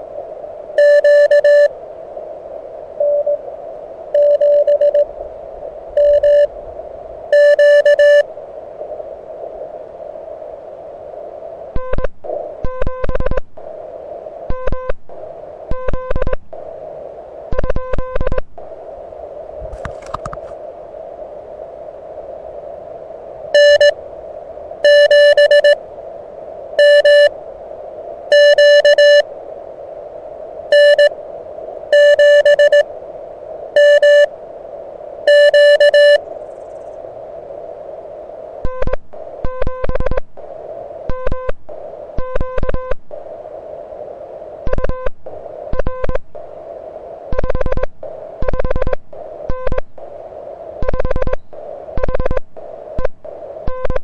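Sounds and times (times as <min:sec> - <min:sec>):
receiver hiss: 0:00.0 - 0:54.0
morse code tones: 0:00.8 - 0:01.7, 0:04.2 - 0:05.1, 0:06.0 - 0:06.5, 0:07.4 - 0:08.3, 0:11.8 - 0:13.8, 0:14.5 - 0:16.7, 0:17.5 - 0:18.8, 0:23.6 - 0:24.0, 0:24.8 - 0:25.8, 0:26.8 - 0:27.3, 0:28.3 - 0:29.3, 0:30.7 - 0:31.1, 0:32.0 - 0:32.9, 0:33.8 - 0:34.3, 0:35.3 - 0:36.2, 0:38.6 - 0:43.3, 0:44.7 - 0:46.6, 0:47.3 - 0:50.2, 0:50.8 - 0:54.0.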